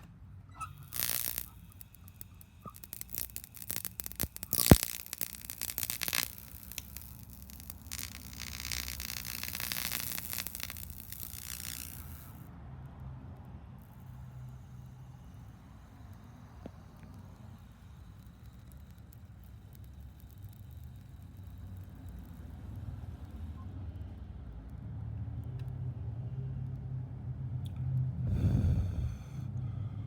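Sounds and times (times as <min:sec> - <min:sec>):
arc hissing: 0:00.0 - 0:12.5, 0:13.8 - 0:23.7
electric arc crackling and sputtering: 0:00.0 - 0:12.5, 0:13.8 - 0:23.6
sharp electric snap: 0:00.0 - 0:12.5, 0:13.8 - 0:23.6.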